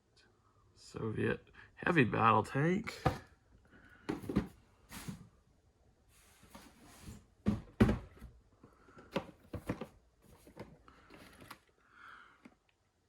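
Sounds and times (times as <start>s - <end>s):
cardboard boxes knocking and thumping: 3.0s - 3.3s, 4.0s - 5.3s, 6.5s - 8.4s, 9.1s - 11.6s.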